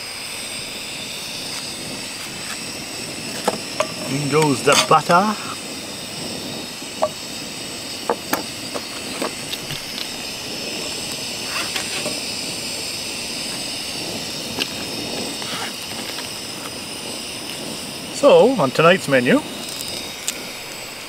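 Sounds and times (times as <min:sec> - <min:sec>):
butter sizzling in a pan: 0:00.0 - 0:21.0
sharp ticks and pops: 0:14.2 - 0:17.7, 0:19.6 - 0:20.4.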